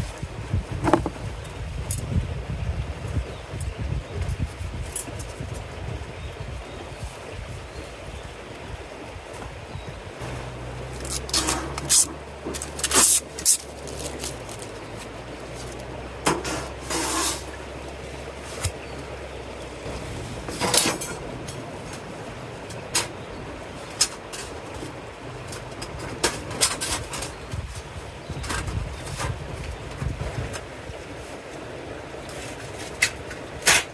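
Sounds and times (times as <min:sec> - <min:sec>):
low steady hum: 0:00.0 - 0:33.5
gear clicking and knocking: 0:10.2 - 0:16.8
short scraping rustles: 0:10.2 - 0:17.7.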